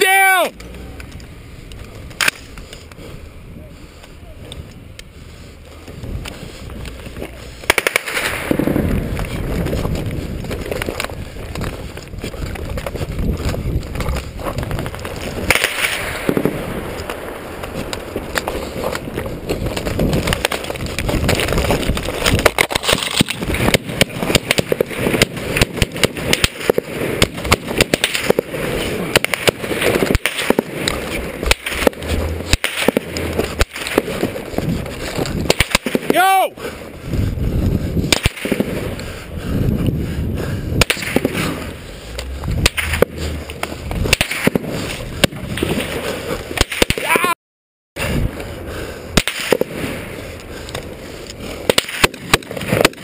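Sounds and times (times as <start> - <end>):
gunfire bursts: 7.6 - 8.8, 22.7 - 34.3.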